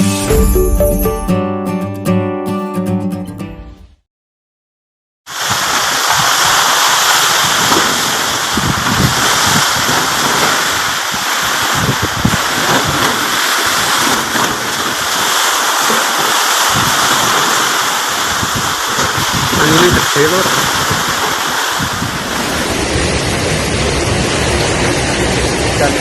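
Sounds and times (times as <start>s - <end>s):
wind thumping on microphone: 5.3s - 25.7s
heavy rain and hail: 5.3s - 26.0s.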